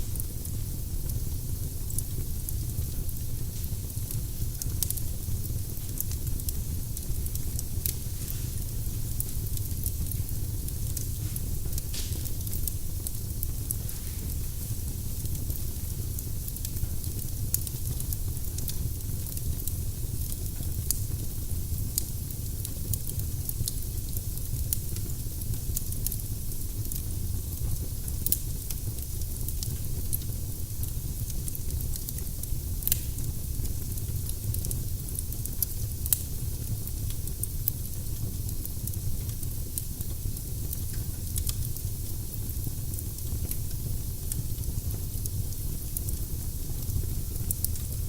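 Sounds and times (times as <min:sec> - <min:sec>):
firewood crackling and popping: 0:00.0 - 0:48.0
low fire rumble: 0:00.0 - 0:48.0.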